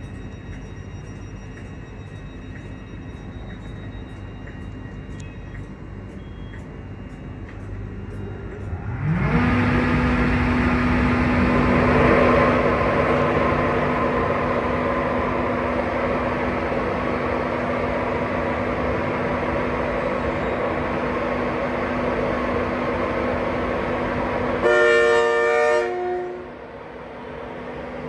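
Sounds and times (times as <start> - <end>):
electric train rumbling past: 0.0 - 28.0
two-tone train horn: 24.5 - 26.7.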